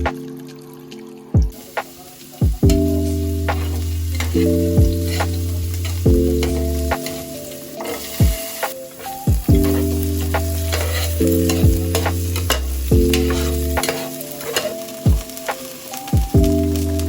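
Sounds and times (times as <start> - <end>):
crackling hiss: 0.0 - 17.0
keyboard chords: 0.0 - 17.0
deep kick drums: 2.4 - 2.8, 9.3 - 9.7.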